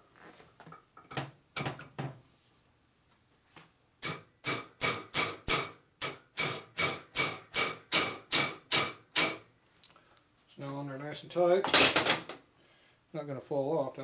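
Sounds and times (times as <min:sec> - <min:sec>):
hammer blows ringing on metal: 0:04.0 - 0:09.4.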